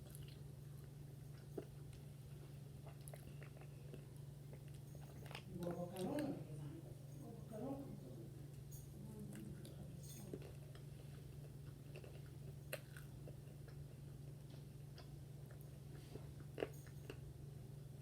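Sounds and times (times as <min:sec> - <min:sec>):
person chewing crispy food: 0:00.0 - 0:06.2, 0:09.3 - 0:17.3
steady low hum: 0:00.0 - 0:18.0.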